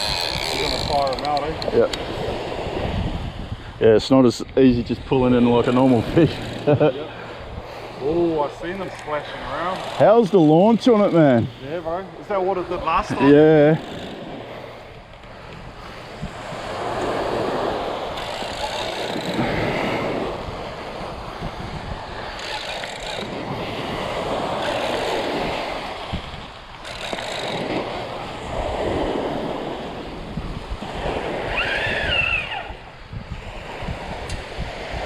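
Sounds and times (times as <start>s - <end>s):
surf washing onto shore: 0.0s - 35.0s
wind buffeting microphone: 0.0s - 35.0s
high rising and falling call: 31.5s - 32.8s.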